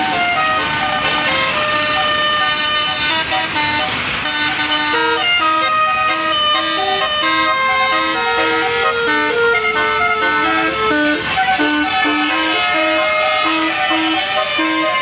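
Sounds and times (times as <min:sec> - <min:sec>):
air horn playing a melody: 0:00.0 - 0:15.0.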